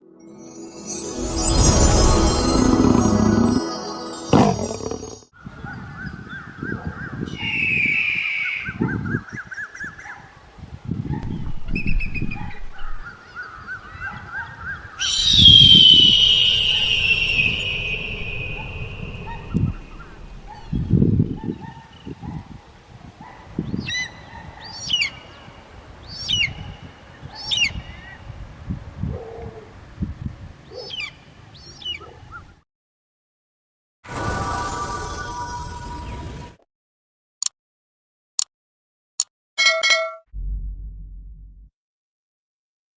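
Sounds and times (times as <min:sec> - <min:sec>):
kite bird calling: 0:15.0 - 0:20.9
low rumbles: 0:15.0 - 0:21.4, 0:40.4 - 0:41.7.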